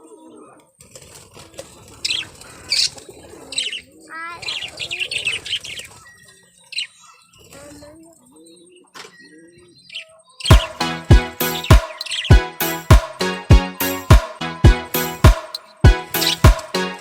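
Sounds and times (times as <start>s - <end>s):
low bird coos: 0.0s - 6.6s
birds chirping: 0.0s - 17.0s
wings flapping: 0.8s - 3.8s.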